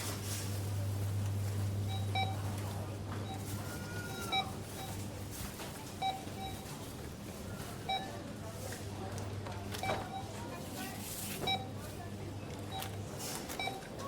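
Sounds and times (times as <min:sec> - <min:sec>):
faint store clatter: 0:00.0 - 0:14.0
barcode scanner beeps: 0:01.8 - 0:02.5, 0:03.2 - 0:05.0, 0:06.0 - 0:06.7, 0:09.8 - 0:10.4, 0:11.4 - 0:11.7, 0:12.7 - 0:14.0.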